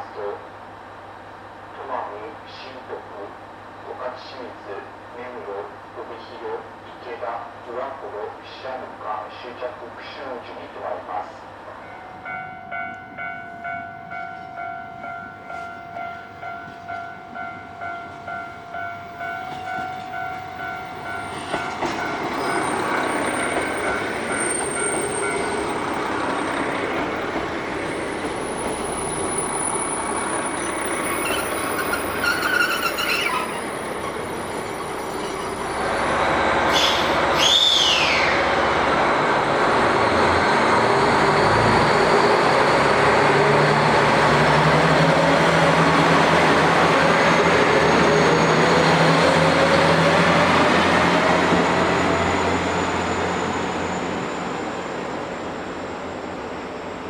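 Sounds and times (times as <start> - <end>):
train running noise: 1.6 - 57.0
level-crossing bell ringing: 11.9 - 26.1
high falling squeal: 28.8 - 38.8, 51.6 - 57.0.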